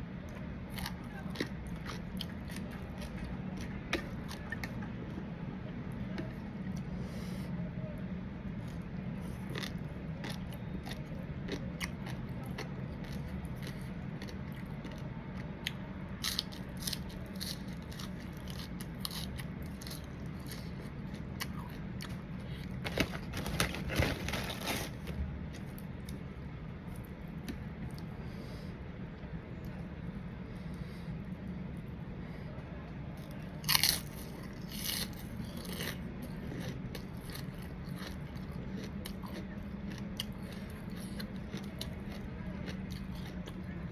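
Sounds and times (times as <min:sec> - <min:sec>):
steady low hum: 0:00.0 - 0:43.9
person chewing food: 0:00.3 - 0:05.3, 0:08.6 - 0:26.3, 0:33.2 - 0:43.7.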